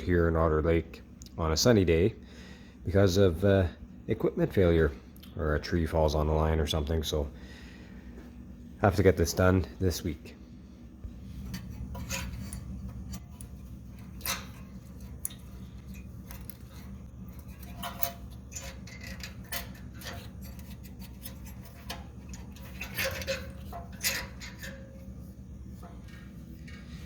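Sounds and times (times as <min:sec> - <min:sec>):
steady low hum: 0:00.0 - 0:27.0
hand tools clicking and clinking: 0:11.5 - 0:25.1.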